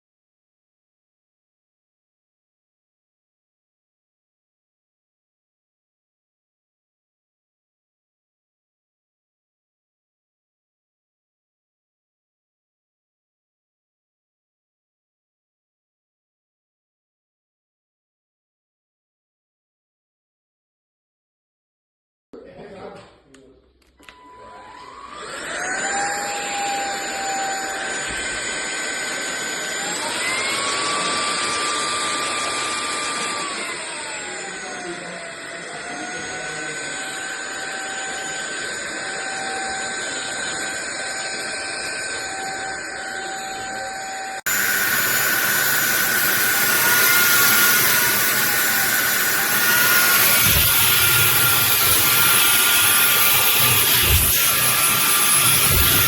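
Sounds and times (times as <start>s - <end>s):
stick vacuum motor whine: 24.0s - 56.0s.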